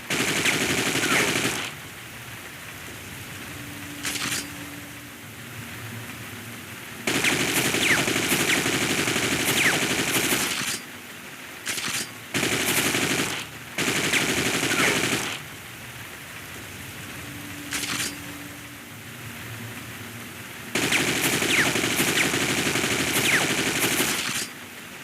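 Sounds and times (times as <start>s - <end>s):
automatic rifle fire: 0.1s - 1.8s, 7.1s - 10.8s, 11.7s - 15.4s, 20.8s - 24.5s.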